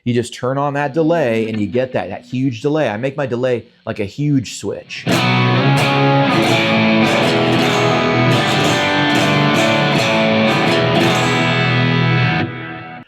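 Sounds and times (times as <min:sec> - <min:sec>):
electric guitar strummed in chords: 0:05.0 - 0:13.0.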